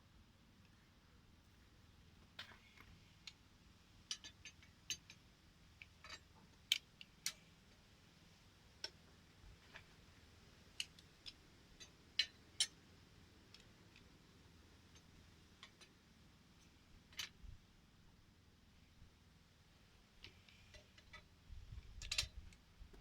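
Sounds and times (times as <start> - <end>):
light sharp clicks and taps: 14.9 - 16.0.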